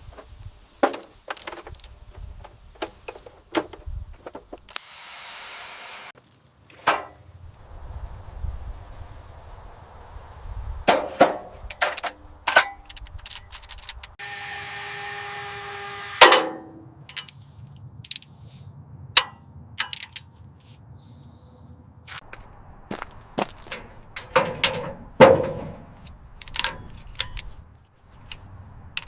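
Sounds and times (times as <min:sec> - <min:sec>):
metallic clanks and knocks: 0:10.9 - 0:14.2, 0:16.2 - 0:17.4, 0:23.5 - 0:27.5
tool whirring: 0:14.1 - 0:16.4.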